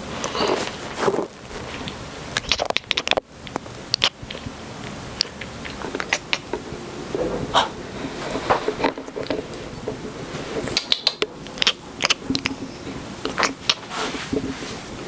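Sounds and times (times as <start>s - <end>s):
kitten clicks and scratchy rustling: 7.3s - 14.7s.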